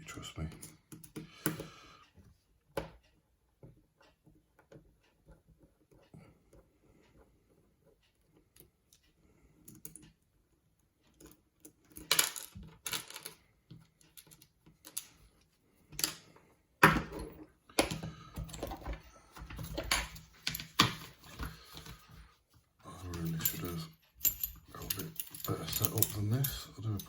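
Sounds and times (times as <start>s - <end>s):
metal lock parts clicking and rattling: 16.9s - 22.0s, 23.1s - 27.0s.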